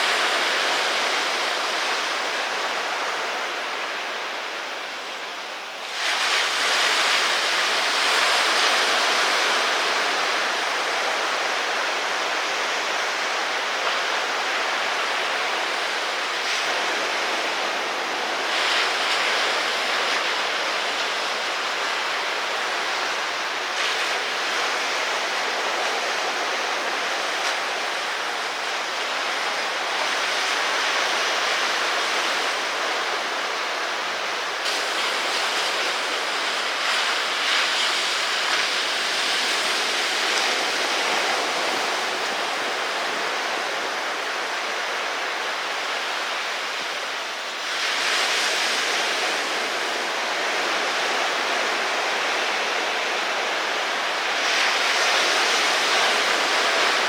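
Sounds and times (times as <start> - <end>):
ocean surf rushing: 0.0 - 57.0.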